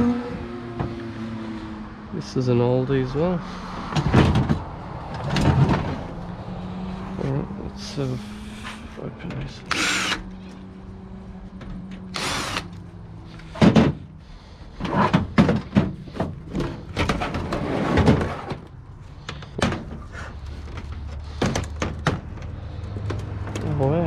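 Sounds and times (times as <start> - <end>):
power driver whirring: 9.6 - 10.4, 12.1 - 12.8
metal case knocks and scraping: 14.8 - 18.7.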